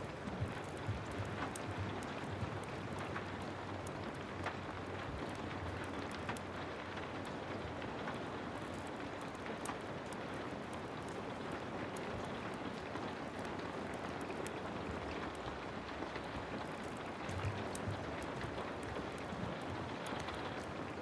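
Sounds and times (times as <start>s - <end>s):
heavy rain falling: 0.0s - 21.0s
wood fire crackling: 0.0s - 21.0s.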